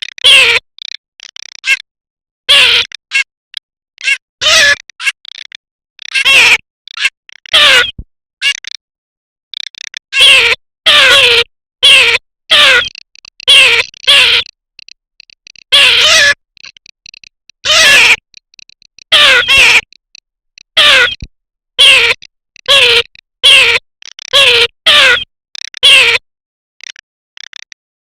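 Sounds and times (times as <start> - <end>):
duck harsh nasal calls: 2.5 - 3.3, 4.0 - 5.2, 6.1 - 8.6, 10.1 - 14.5, 15.7 - 16.4, 17.6 - 18.2, 19.1 - 19.9, 20.8 - 21.2, 21.8 - 26.2.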